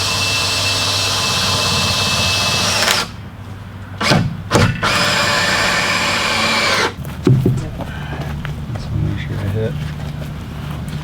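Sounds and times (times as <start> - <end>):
power drill driving a screw: 0.0 - 3.2, 4.0 - 7.0.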